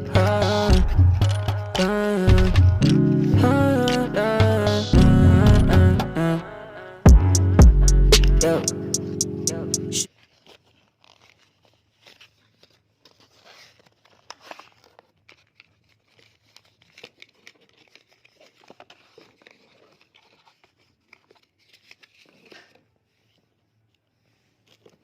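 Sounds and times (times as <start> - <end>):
packaging being torn and crinkled: 10.1 - 22.8.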